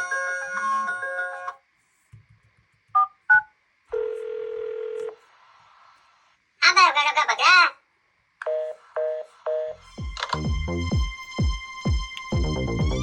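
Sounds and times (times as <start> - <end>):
steady phone tone: 3.9 - 5.2.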